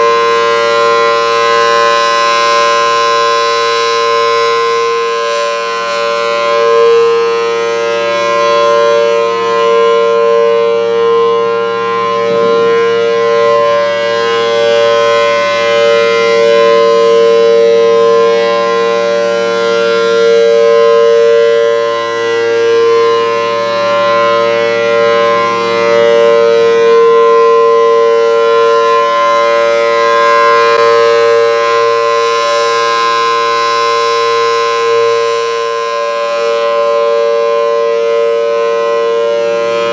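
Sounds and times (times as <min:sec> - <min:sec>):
warning siren two-note alert tone: 0:00.0 - 0:39.9.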